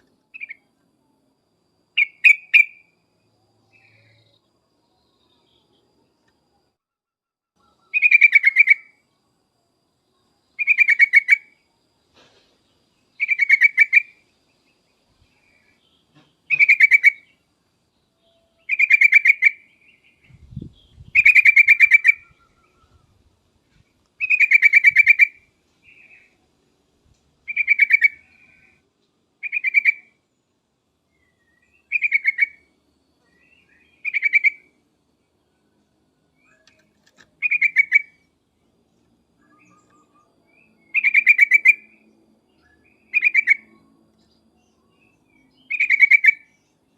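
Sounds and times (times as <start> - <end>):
bulbul singing: 0.0 - 0.8, 1.9 - 3.0, 13.0 - 23.2, 24.2 - 26.4, 27.5 - 28.8, 29.4 - 30.2, 31.1 - 35.4, 36.3 - 46.9.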